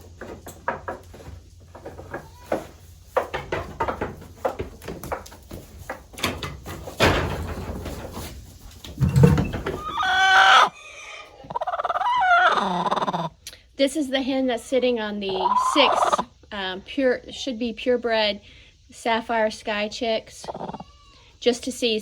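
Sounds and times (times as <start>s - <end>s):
scattered knocks and rustling: 0.0s - 9.9s
hen calling: 9.7s - 13.3s, 15.2s - 16.3s, 20.4s - 21.0s.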